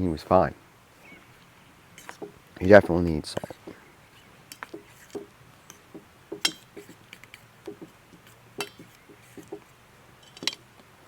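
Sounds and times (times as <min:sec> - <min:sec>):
utensils clinking against a dish: 0:03.3 - 0:10.7.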